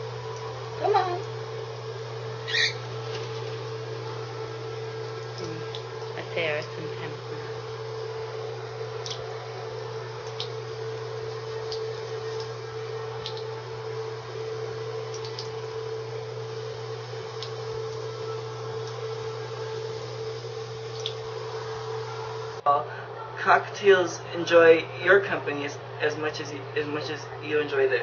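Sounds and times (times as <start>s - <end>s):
tap water running: 0.0s - 22.6s
constant hum: 0.0s - 28.0s
faint high ticks: 13.2s - 13.5s, 15.1s - 15.5s, 20.9s - 21.2s.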